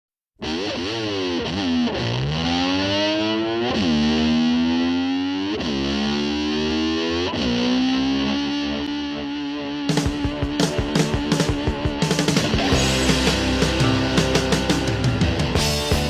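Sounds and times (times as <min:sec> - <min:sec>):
distorted electric slide guitar: 0:00.4 - 0:16.0
rock band backing: 0:08.5 - 0:16.0.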